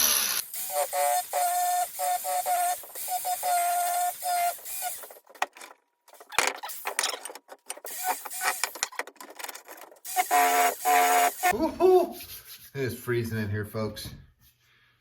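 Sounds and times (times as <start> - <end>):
power tool motor whining in pulses: 0.0 - 5.2, 10.1 - 11.5.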